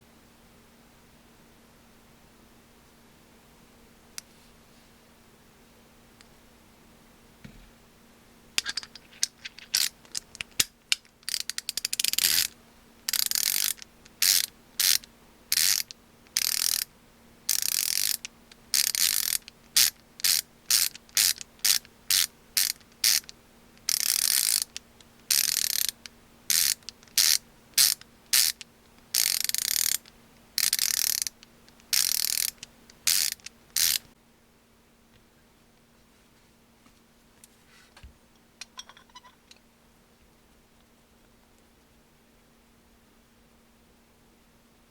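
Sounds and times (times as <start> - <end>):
ratchet freewheel clicking: 11.3 - 12.5, 13.1 - 16.9, 17.5 - 23.3, 23.9 - 24.7, 25.3 - 28.6, 29.2 - 30.0, 30.6 - 34.0.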